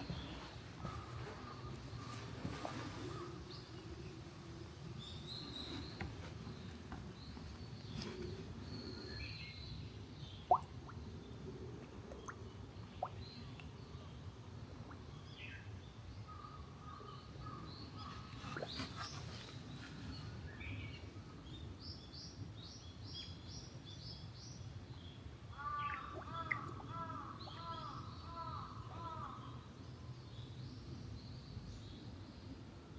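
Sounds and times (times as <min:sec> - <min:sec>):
birds chirping: 0:00.0 - 0:04.1, 0:25.6 - 0:29.6.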